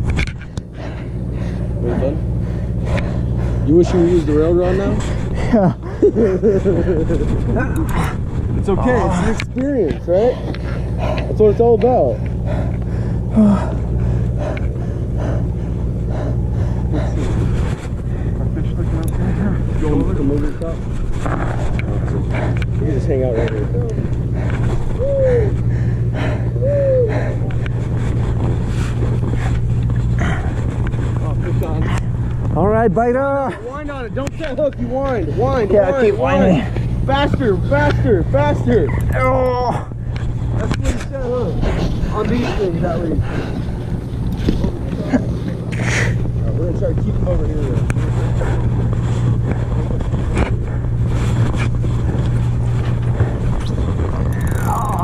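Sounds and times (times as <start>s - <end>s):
boat engine droning: 0.0s - 55.0s
voice-like calls: 54.3s - 55.0s.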